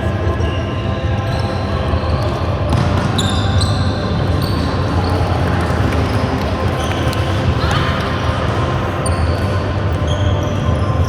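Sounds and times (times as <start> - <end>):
shoes squeaking: 1.2 - 11.0.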